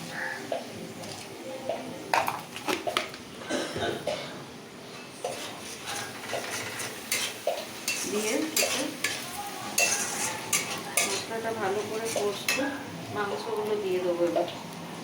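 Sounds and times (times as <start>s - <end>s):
spices frying: 4.5s - 15.0s
spatula scraping a pan: 4.9s - 12.7s.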